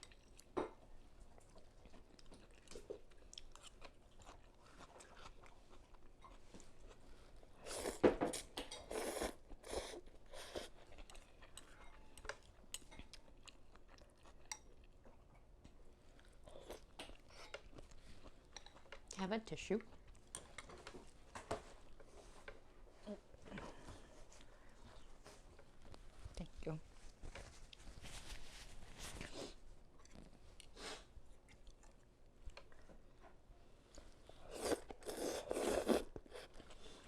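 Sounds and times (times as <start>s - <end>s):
person chewing food: 1.3s - 19.1s, 29.2s - 37.0s.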